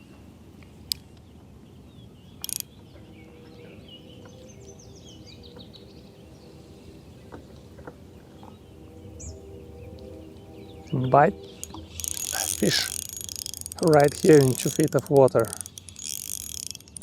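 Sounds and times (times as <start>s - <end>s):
birds chirping: 12.0s - 16.1s
steady low hum: 12.1s - 13.2s
short rattle: 12.1s - 17.0s.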